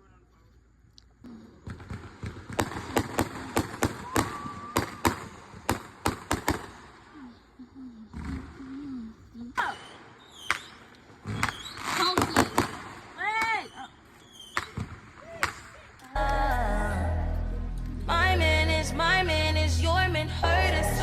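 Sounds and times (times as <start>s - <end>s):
fireworks banging: 1.3s - 7.2s, 9.6s - 16.0s
voices: 11.8s - 21.0s.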